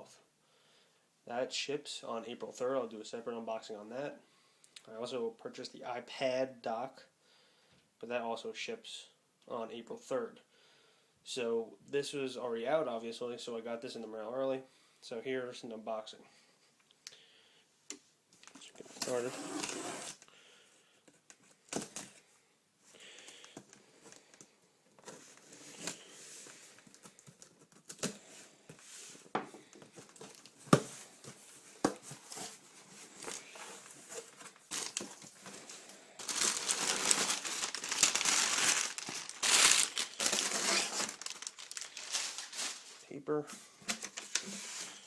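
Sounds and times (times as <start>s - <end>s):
packing paper crinkling: 32.1s - 43.0s, 43.9s - 45.0s.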